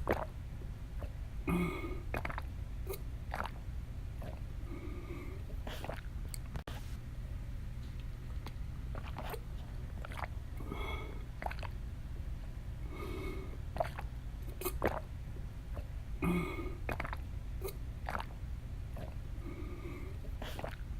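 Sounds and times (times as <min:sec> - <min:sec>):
woman gulping water: 0:00.0 - 0:03.6, 0:04.2 - 0:06.6, 0:08.4 - 0:11.8, 0:12.9 - 0:15.1, 0:15.7 - 0:19.2, 0:19.8 - 0:20.9
steady low hum: 0:00.0 - 0:20.9
wet mouth clicks: 0:02.1 - 0:03.6, 0:05.6 - 0:06.6, 0:08.4 - 0:09.4, 0:10.0 - 0:10.3, 0:11.4 - 0:11.8, 0:13.8 - 0:15.1, 0:16.9 - 0:18.3, 0:19.0 - 0:19.2, 0:20.3 - 0:20.8.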